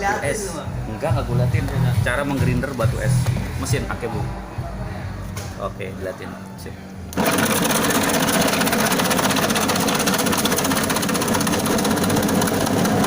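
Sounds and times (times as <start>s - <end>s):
electric ice crusher grinding ice: 7.1s - 13.0s.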